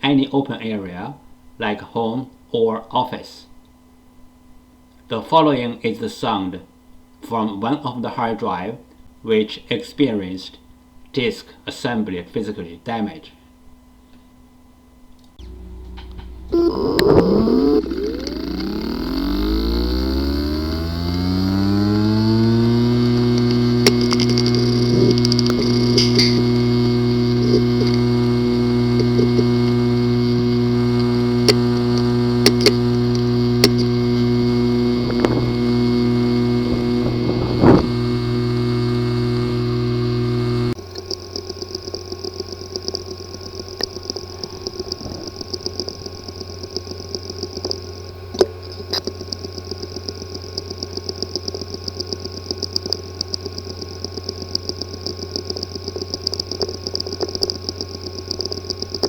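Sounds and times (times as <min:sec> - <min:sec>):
hard drive clicks: 0:15.2 - 0:59.0
high whine with rapid ticking: 0:15.2 - 0:59.0
hard drive buzzing: 0:15.3 - 0:59.0.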